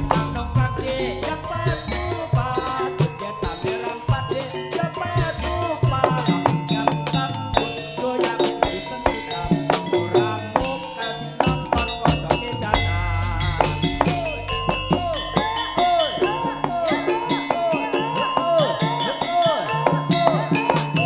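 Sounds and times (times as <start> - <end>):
deep low note: 0.0 - 2.5
sustained melodic notes: 0.0 - 3.6, 10.1 - 21.0
busy drumming: 0.0 - 21.0.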